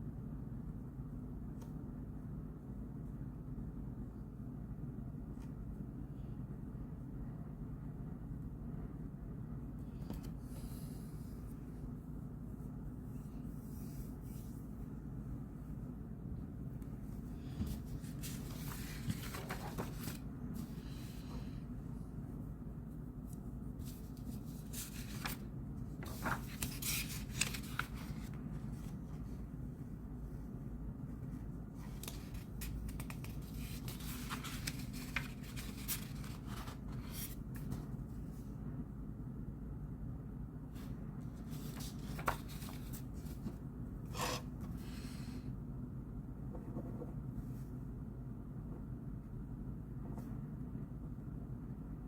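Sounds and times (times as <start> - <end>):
low room hum: 0.0 - 52.0
paper rustling: 17.6 - 20.8, 23.8 - 29.4, 31.8 - 38.0, 41.4 - 43.6.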